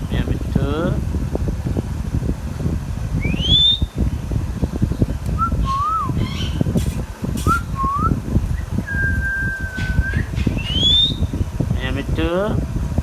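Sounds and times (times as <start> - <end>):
constant low rumble: 0.0 - 13.0
parrot whistling: 3.2 - 3.9, 5.4 - 6.7, 7.4 - 11.4.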